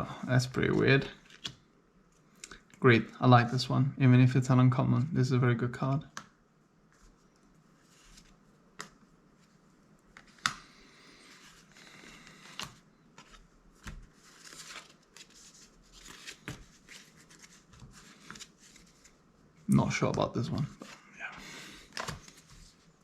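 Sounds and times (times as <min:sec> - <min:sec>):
cards sliding: 0:10.1 - 0:19.2, 0:21.6 - 0:22.8.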